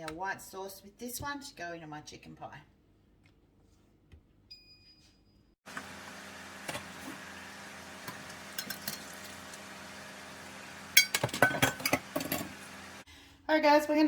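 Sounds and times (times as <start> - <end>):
steady mechanical hum: 5.7 - 13.1
kitchenware clinks: 11.0 - 12.6.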